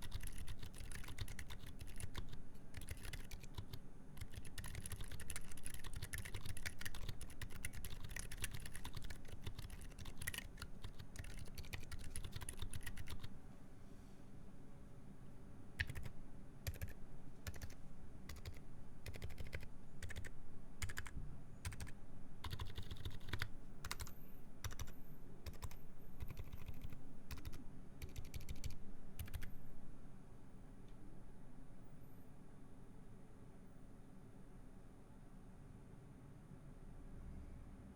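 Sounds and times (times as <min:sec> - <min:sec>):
mechanical keyboard typing: 0:00.0 - 0:13.3, 0:15.8 - 0:29.5.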